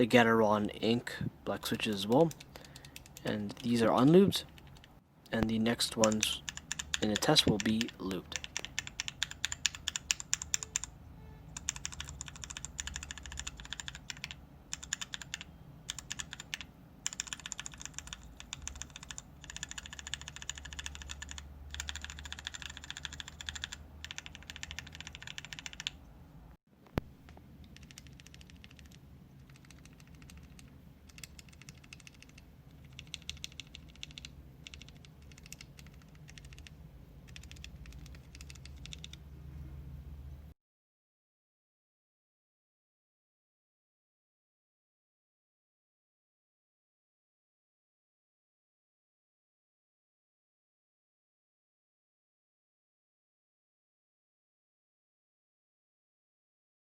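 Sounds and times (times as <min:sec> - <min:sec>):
typing on mechanical keyboard: 0:02.0 - 0:03.7, 0:04.5 - 0:04.9, 0:05.9 - 0:10.9, 0:11.6 - 0:26.0, 0:27.2 - 0:39.2.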